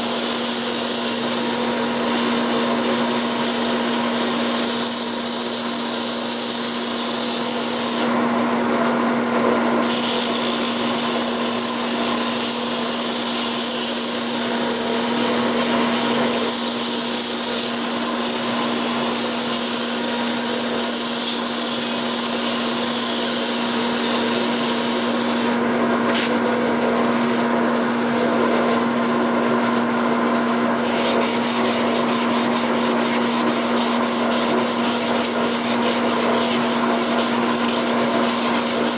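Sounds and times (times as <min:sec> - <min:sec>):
wood lathe motor hum: 0:00.0 - 0:30.0, 0:30.8 - 0:38.9.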